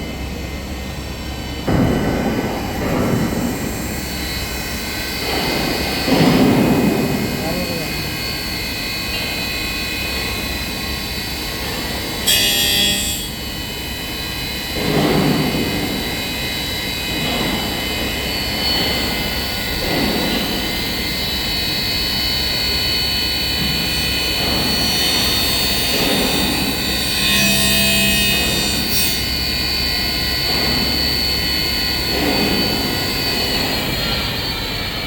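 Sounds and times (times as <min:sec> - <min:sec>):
machine high-pitched whine: 0:00.0 - 0:35.0
cutting tool surges on metal: 0:12.3 - 0:13.4, 0:22.2 - 0:30.0.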